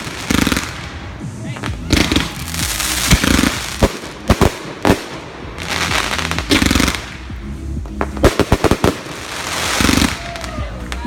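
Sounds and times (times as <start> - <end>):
hissing crackling firework bursts: 0.0 - 7.2, 8.4 - 11.0
firework bangs: 0.0 - 10.7.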